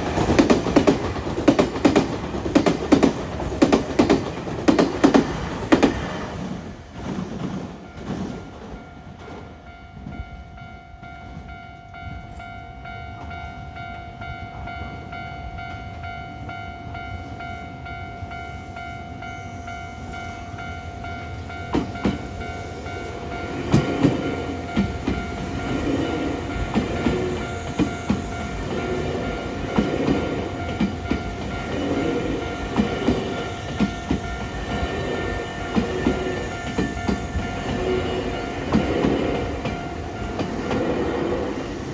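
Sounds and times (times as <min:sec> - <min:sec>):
train wheels clacking over rail joints: 0:00.0 - 0:08.4, 0:23.6 - 0:41.9.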